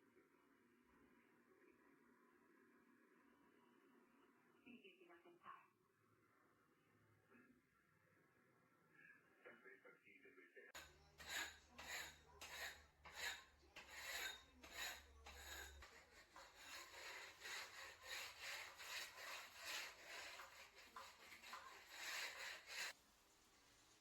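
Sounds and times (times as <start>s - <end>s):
hand tool scraping: 10.8s - 23.0s.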